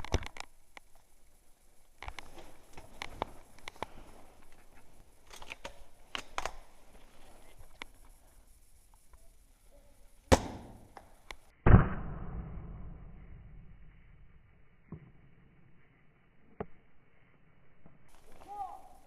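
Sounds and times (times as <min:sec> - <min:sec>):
airsoft rifle shots: 0:10.3 - 0:11.0.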